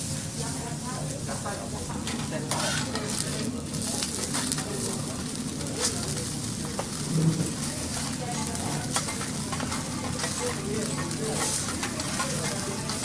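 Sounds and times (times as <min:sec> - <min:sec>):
food sizzling on a griddle: 0:00.0 - 0:13.0.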